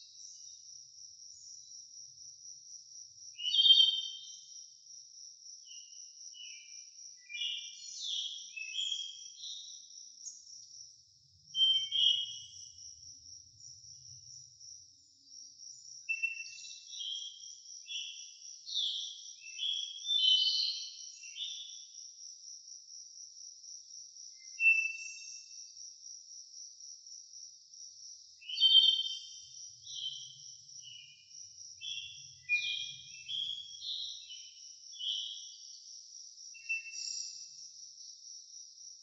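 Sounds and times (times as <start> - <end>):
crickets chirping: 0.0 - 39.0
songbird singing: 0.0 - 39.0.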